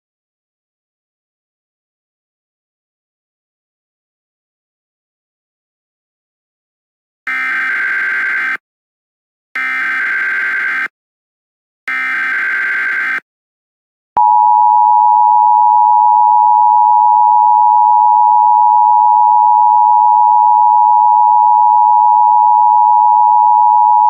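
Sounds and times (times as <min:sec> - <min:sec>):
steady high alarm tone: 0:07.3 - 0:08.6, 0:09.6 - 0:10.9, 0:11.9 - 0:13.2, 0:14.2 - 0:24.0.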